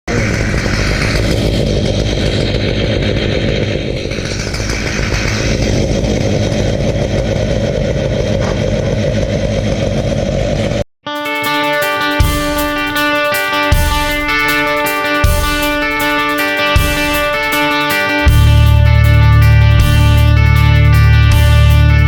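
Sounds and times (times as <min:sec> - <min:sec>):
chainsaw mill cutting log: 0:00.1 - 0:10.8.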